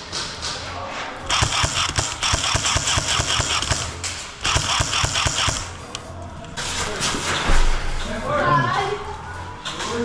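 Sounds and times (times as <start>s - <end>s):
airsoft gun rapid fire: 1.2s - 6.1s.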